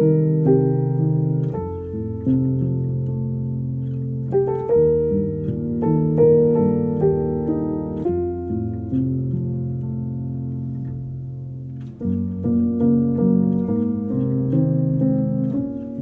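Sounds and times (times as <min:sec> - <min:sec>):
slow piano chords: 0:00.0 - 0:16.0.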